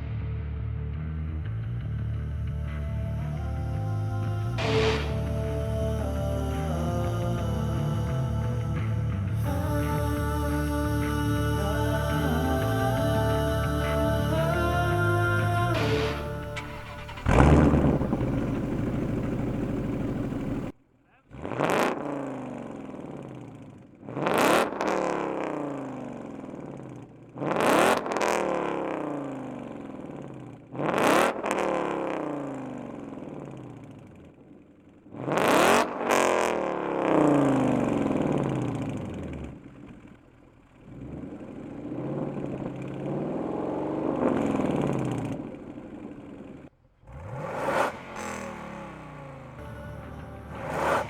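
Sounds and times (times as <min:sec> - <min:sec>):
car exhaust throttle blips: 0:00.0 - 0:25.4, 0:36.7 - 0:51.0.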